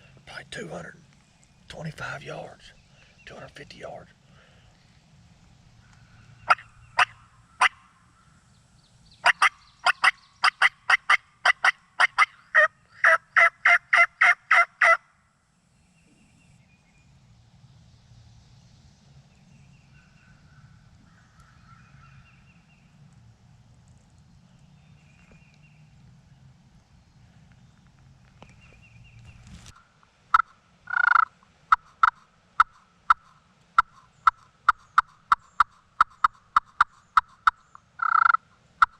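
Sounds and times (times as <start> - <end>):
turkey call yelps: 6.5 - 7.9, 9.2 - 15.0, 30.3 - 38.9
faint bird chirps: 15.7 - 17.2.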